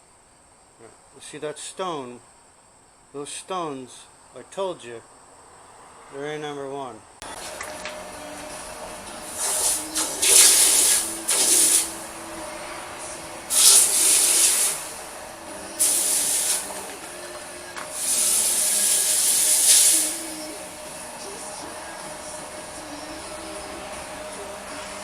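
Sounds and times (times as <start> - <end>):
blade hissing on grinding wheel: 7.2 - 25.0
grinder motor hum: 7.2 - 25.0.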